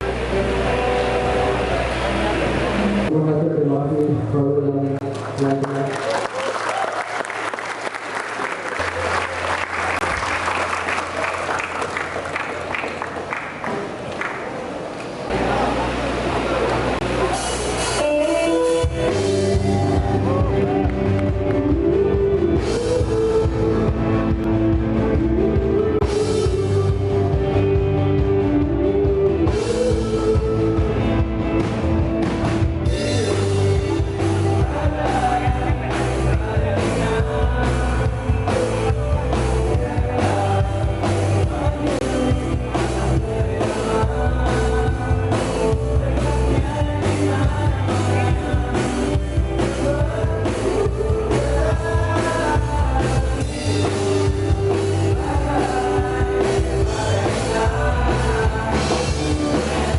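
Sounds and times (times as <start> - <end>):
rock band playing live: 0.0 - 3.1, 15.3 - 59.9
person singing: 0.0 - 3.2, 17.3 - 31.8, 32.8 - 59.9.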